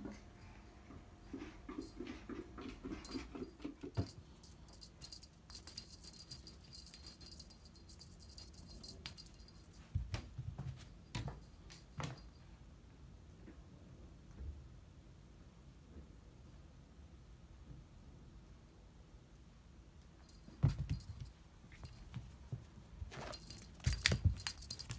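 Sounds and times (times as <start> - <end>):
toy clicking and jingling: 2.9 - 10.0, 20.2 - 22.2, 23.2 - 24.9.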